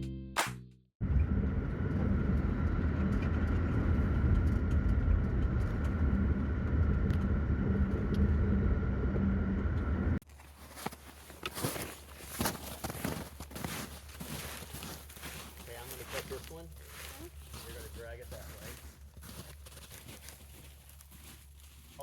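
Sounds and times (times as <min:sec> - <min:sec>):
faint steady whine: 0:01.0 - 0:10.2
road rumble of vehicle: 0:01.0 - 0:10.2.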